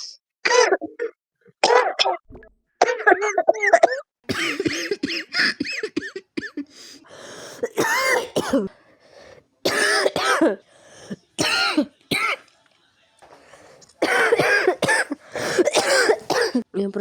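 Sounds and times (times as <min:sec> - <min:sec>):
person coughing harshly: 0:02.8 - 0:06.8, 0:07.4 - 0:08.7, 0:09.6 - 0:10.6, 0:11.4 - 0:12.4, 0:14.0 - 0:16.6
person drawing breath: 0:10.7 - 0:11.2, 0:15.2 - 0:15.7.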